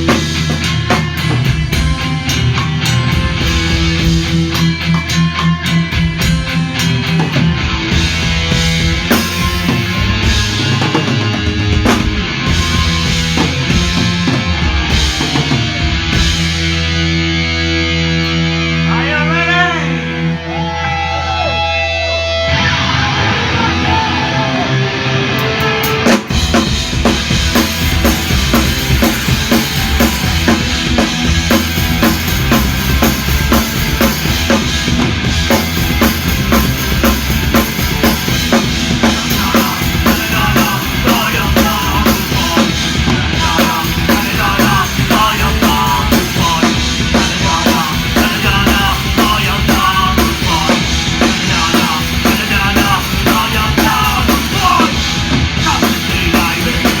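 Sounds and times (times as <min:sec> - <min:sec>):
drum kit beat: 0:00.0 - 0:17.2, 0:25.6 - 0:57.0
punk rock band playing: 0:00.0 - 0:57.0.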